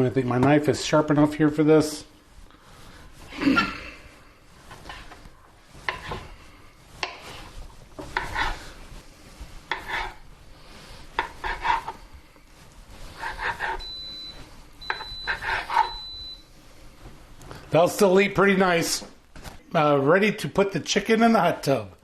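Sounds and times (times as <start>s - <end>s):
knife slicing on cutting board: 7.0s - 8.6s, 9.7s - 10.2s, 11.2s - 12.0s, 13.2s - 13.8s.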